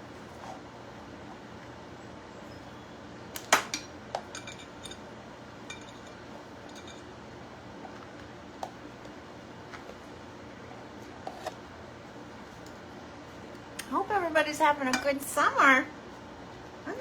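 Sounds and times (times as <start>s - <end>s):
utensil clinking against a dish: 3.6s - 7.1s, 14.9s - 15.2s.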